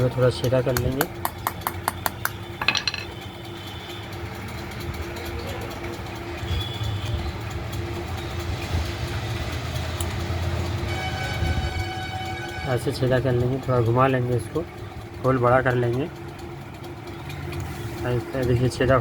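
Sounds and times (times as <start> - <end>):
low mechanical rumble: 0.0 - 19.0.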